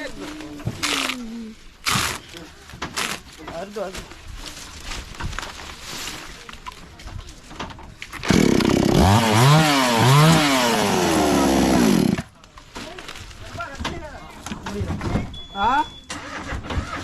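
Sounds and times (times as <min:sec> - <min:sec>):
chainsaw engine revving: 0:08.2 - 0:12.2.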